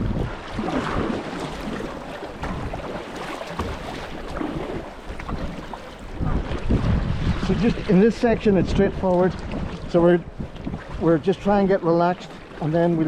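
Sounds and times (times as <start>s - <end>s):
kayak paddle strokes: 0.0s - 6.7s
river water splashing: 0.0s - 13.0s
wind buffeting microphone: 0.0s - 13.0s.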